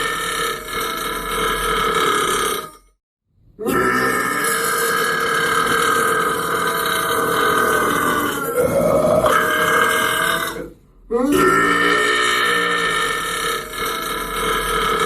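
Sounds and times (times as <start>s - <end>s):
man burping: 3.6s - 15.0s.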